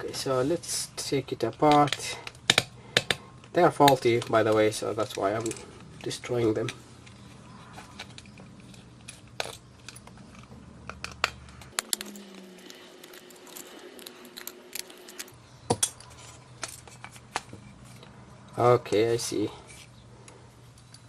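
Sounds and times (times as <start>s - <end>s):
plastic parts clicking: 7.8s - 15.8s.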